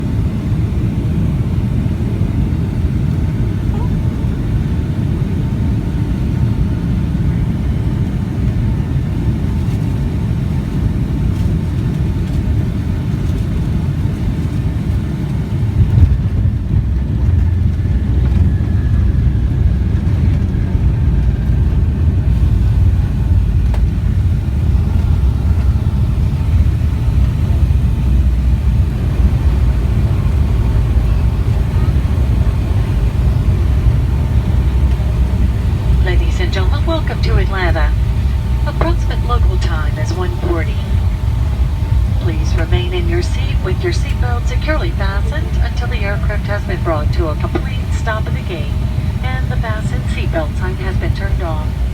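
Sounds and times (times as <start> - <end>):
jet engine and airflow rumble: 0.0 - 51.9
faint falling whine: 22.4 - 51.9.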